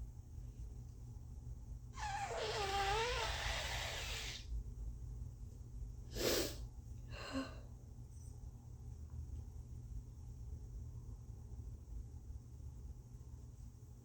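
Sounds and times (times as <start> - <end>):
person blowing nose: 2.0 - 4.5.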